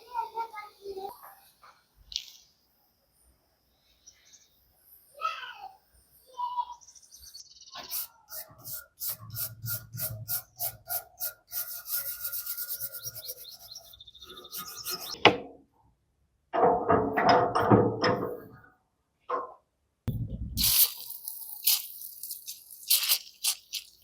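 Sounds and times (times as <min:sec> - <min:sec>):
filing on rusty metal: 0:07.8 - 0:15.2.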